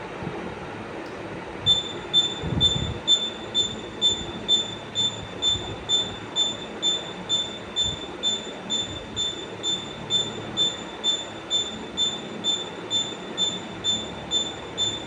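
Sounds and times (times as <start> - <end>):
steady noisy hum: 0.0 - 15.0.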